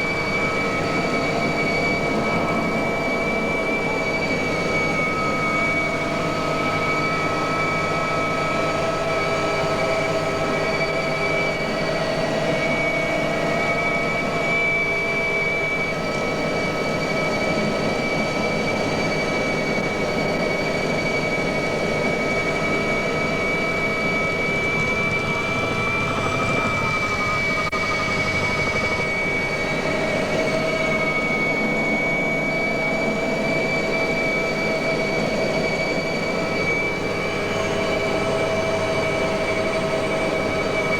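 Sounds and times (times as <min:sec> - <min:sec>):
helicopter engine drone from cabin: 0:00.0 - 0:40.9
high whining tones: 0:22.5 - 0:40.8.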